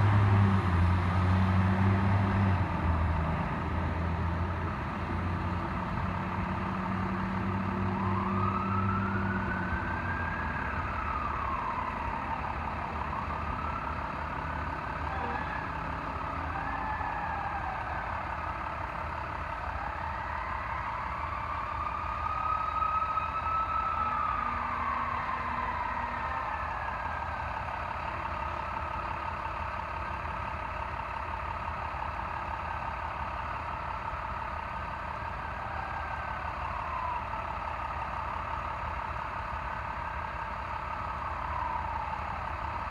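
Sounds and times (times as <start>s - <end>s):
low engine drone: 0.0s - 42.9s
mechanical siren wailing: 7.8s - 18.2s, 19.6s - 27.8s, 35.4s - 37.6s, 41.1s - 42.9s.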